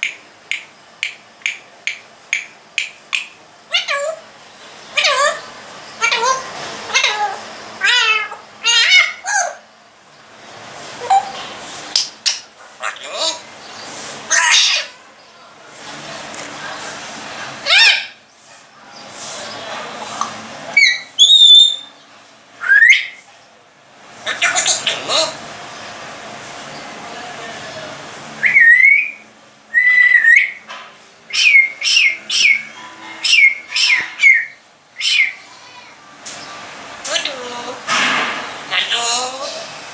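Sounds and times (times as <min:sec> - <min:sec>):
parrot meowing: 0:03.7 - 0:04.2, 0:05.0 - 0:05.4, 0:06.0 - 0:09.6, 0:14.3 - 0:15.0
parrot whistling loudly: 0:06.0 - 0:09.6, 0:14.3 - 0:14.9, 0:17.6 - 0:18.2, 0:20.8 - 0:21.9, 0:22.6 - 0:23.2, 0:28.4 - 0:30.6, 0:31.3 - 0:35.4.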